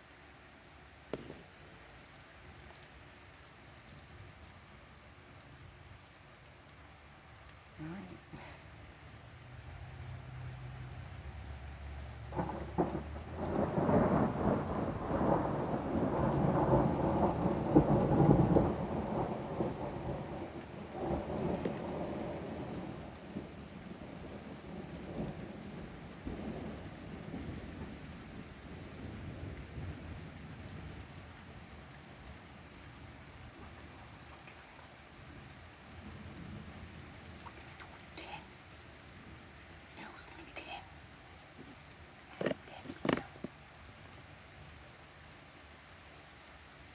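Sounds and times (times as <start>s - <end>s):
steady rain: 0.0s - 46.9s
thunder rumbling: 12.2s - 38.5s.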